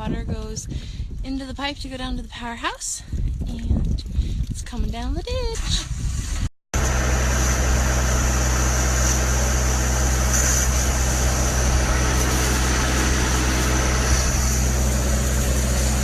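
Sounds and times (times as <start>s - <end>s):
water rushing down ditch: 6.8s - 16.0s.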